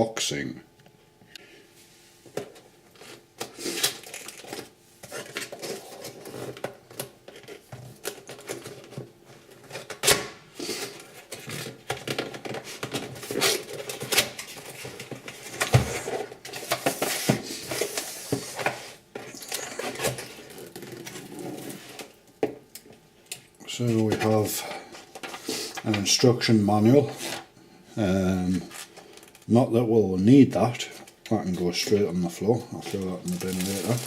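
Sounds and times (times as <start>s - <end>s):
cardboard packaging rustling: 2.5s - 22.2s, 31.6s - 34.0s.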